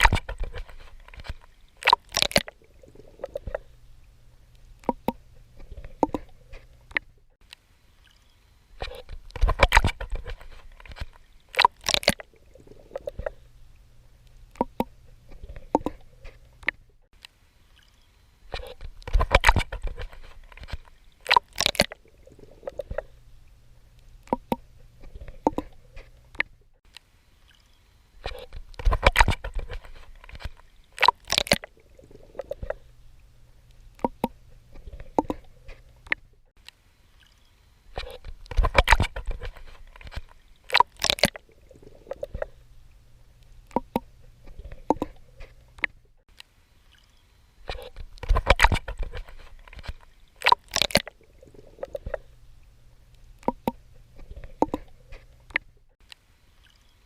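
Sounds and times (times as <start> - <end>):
water splashing from swimming strokes: 0.0 - 7.0, 8.0 - 13.7, 17.7 - 23.6, 24.2 - 26.5, 27.4 - 33.4, 37.2 - 42.8, 43.7 - 45.9, 46.9 - 52.4, 53.4 - 55.6
water dripping: 9.2 - 15.0, 24.0 - 24.7, 33.7 - 34.4, 43.4 - 44.2, 48.0 - 57.0.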